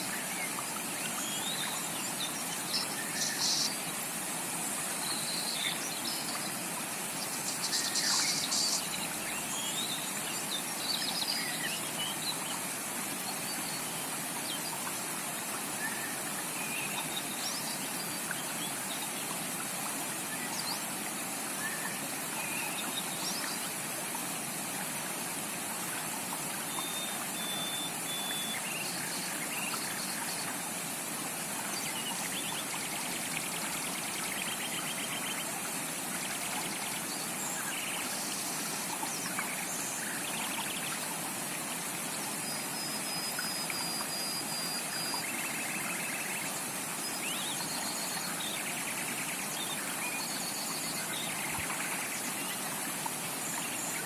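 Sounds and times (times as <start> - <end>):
creek running: 0.0 - 54.0.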